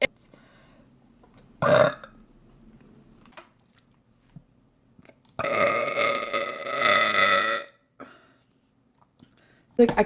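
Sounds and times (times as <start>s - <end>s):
woman burping: 1.6s - 2.2s, 5.4s - 8.1s.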